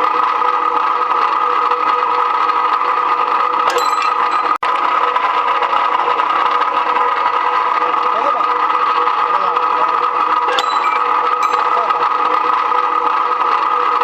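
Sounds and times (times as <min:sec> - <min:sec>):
rebar cutting machine humming: 0:00.0 - 0:14.0
metal clank: 0:03.7 - 0:04.6, 0:10.5 - 0:11.9.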